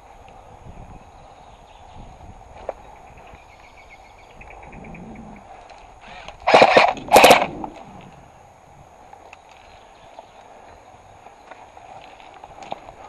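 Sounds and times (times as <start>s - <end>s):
airsoft gun bursts: 6.4s - 7.7s.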